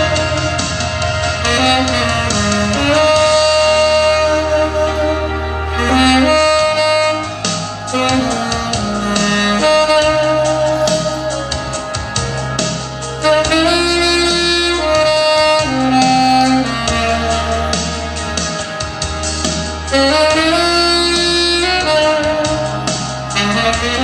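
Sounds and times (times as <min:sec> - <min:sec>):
saxophone melody: 0:00.0 - 0:24.0.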